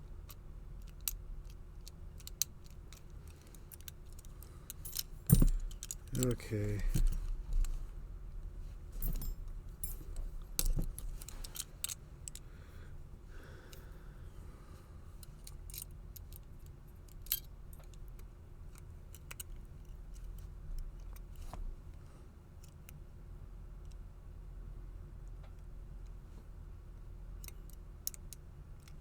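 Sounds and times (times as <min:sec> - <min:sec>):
lock picking metallic clicks: 0:00.3 - 0:07.8, 0:09.0 - 0:12.4, 0:15.2 - 0:20.3, 0:27.4 - 0:29.0.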